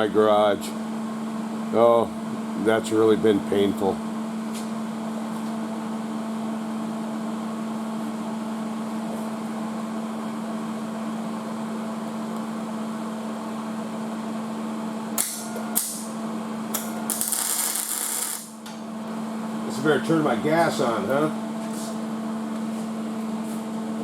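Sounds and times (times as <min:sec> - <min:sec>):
electrical hum with steady tone: 0:00.0 - 0:24.0
welding arc crackling: 0:15.2 - 0:18.7.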